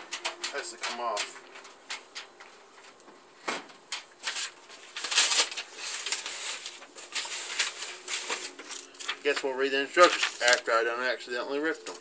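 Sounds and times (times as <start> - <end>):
paper crinkling and tearing: 3.9 - 11.2.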